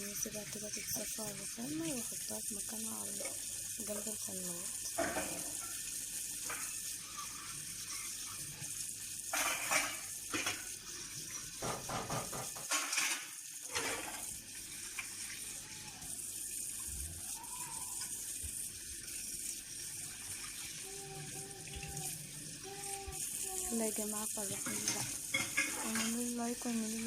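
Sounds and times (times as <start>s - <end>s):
dishes splashing and knocking: 4.9s - 5.8s, 9.3s - 14.3s, 24.4s - 26.4s
tap running into sink: 9.3s - 13.2s.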